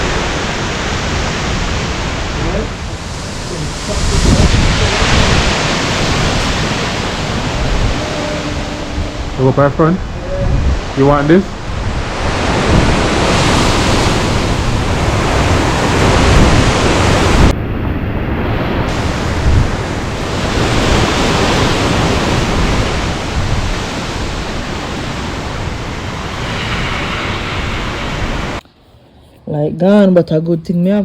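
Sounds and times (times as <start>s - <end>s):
hurricane wind and rain rushing: 0.0s - 28.6s
wind buffeting microphone: 0.0s - 28.9s.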